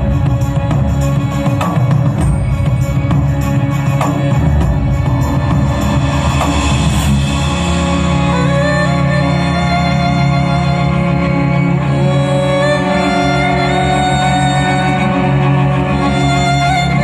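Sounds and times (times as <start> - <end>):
drums and percussion: 0.0 - 11.9.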